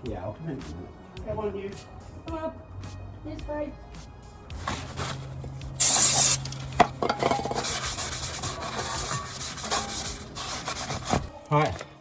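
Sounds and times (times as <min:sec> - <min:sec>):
short loud hiss: 0:04.6 - 0:06.8
tools scraping rusty metal: 0:04.6 - 0:11.3.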